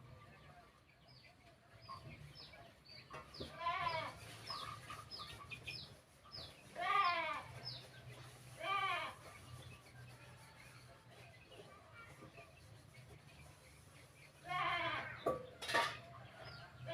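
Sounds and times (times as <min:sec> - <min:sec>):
goat bleating: 0:03.5 - 0:04.2, 0:06.8 - 0:07.6, 0:08.6 - 0:09.2, 0:14.4 - 0:15.2.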